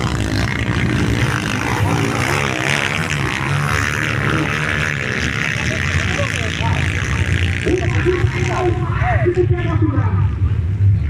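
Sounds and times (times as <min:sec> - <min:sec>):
motorcycle engines revving: 0:00.0 - 0:11.0.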